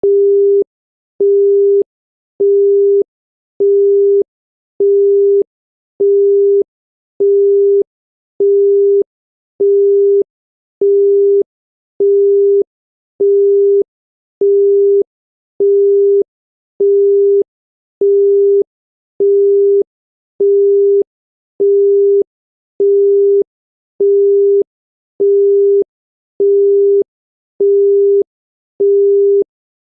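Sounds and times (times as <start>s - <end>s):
telephone busy tone: 0.0s - 0.6s, 1.2s - 1.8s, 2.4s - 3.0s, 10.8s - 11.4s, 18.0s - 18.6s, 22.8s - 23.4s, 24.0s - 24.6s, 25.2s - 25.8s, 26.4s - 27.0s, 27.6s - 28.2s, 28.8s - 29.4s.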